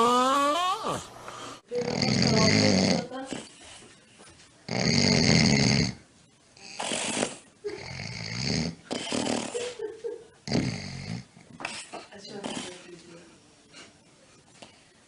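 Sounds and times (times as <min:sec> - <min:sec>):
person snoring: 0:00.0 - 0:03.1, 0:06.6 - 0:09.8
breathing: 0:01.3 - 0:01.7.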